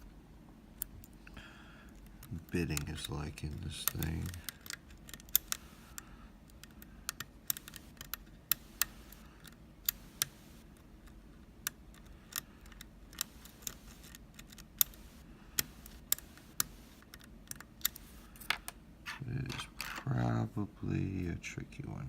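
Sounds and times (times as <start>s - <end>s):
lock pick clicking: 3.8s - 10.4s.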